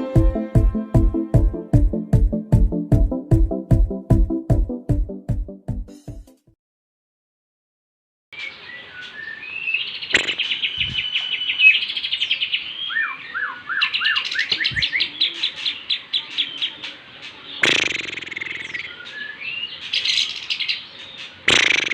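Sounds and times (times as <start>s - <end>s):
bird chattering trill: 10.0s - 12.0s, 12.9s - 21.9s
sharp knock: 10.2s - 10.4s, 21.5s - 21.9s.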